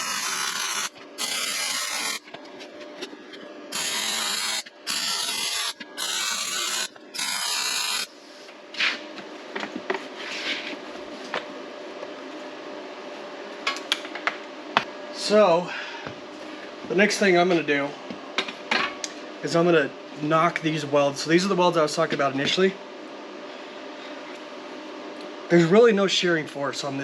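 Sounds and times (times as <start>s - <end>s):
welding arc buzzing: 0.0s - 2.3s, 3.7s - 8.1s.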